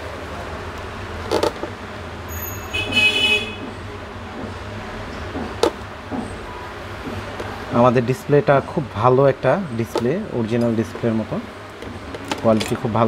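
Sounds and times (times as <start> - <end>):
short high-pitched horn toot: 2.3 - 3.6.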